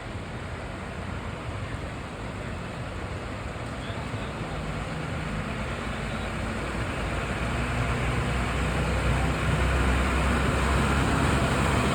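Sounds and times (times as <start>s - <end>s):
heavy vehicle engine humming: 6.9s - 11.9s.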